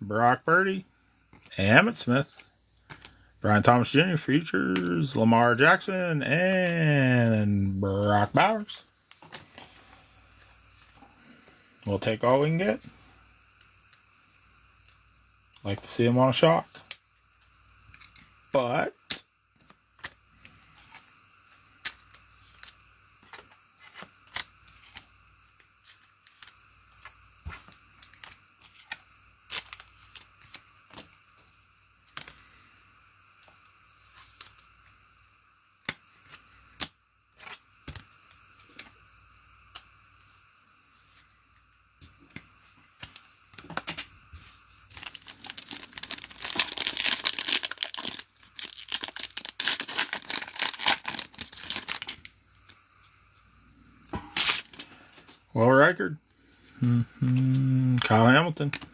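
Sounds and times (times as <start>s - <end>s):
foil wrapper ripped open: 44.9s - 52.7s, 54.4s - 54.8s.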